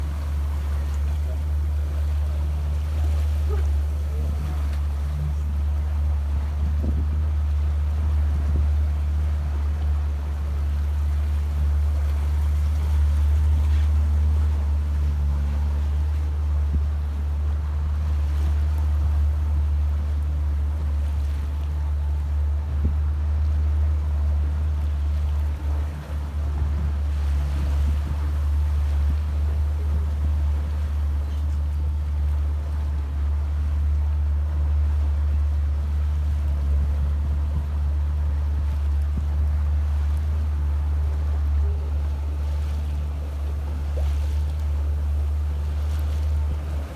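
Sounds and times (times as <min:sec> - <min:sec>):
water wash: 0:00.0 - 0:19.9
rushing water: 0:00.0 - 0:21.0, 0:21.6 - 0:46.9
boat engine droning: 0:00.0 - 0:46.9
wind: 0:00.0 - 0:46.9.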